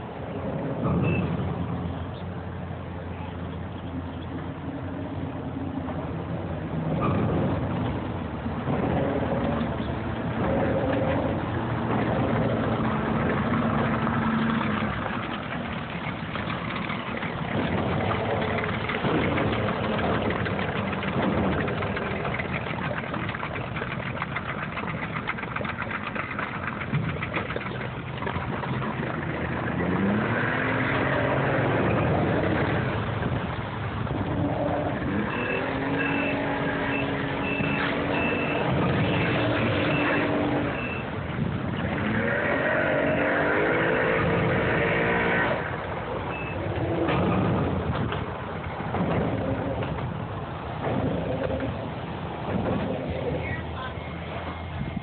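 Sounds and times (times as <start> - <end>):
outboard motor running: 2.6 - 42.0.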